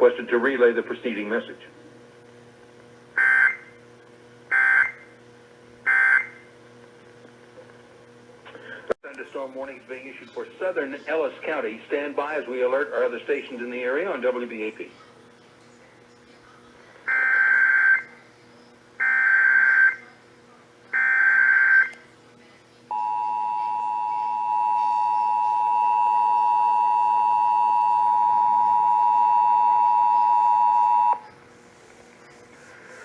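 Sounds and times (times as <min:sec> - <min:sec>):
two-tone alarm signal: 0:03.2 - 0:03.8, 0:04.5 - 0:05.1, 0:05.8 - 0:06.5, 0:17.1 - 0:18.2, 0:19.0 - 0:20.1, 0:20.9 - 0:22.0, 0:22.9 - 0:31.2.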